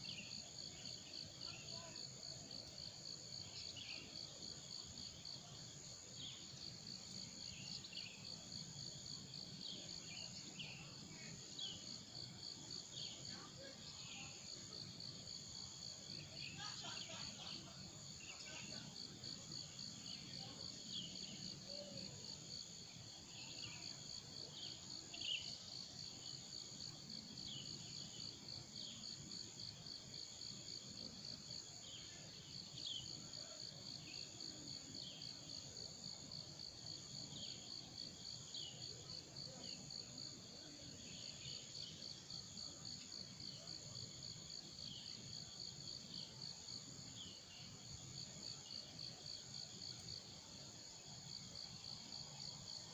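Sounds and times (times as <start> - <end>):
crickets trilling: 11.6 - 48.0.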